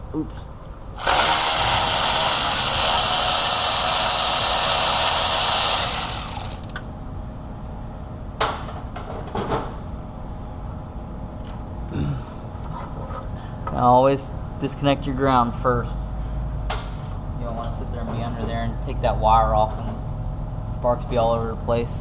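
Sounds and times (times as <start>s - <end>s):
power tool running: 1.0s - 6.8s.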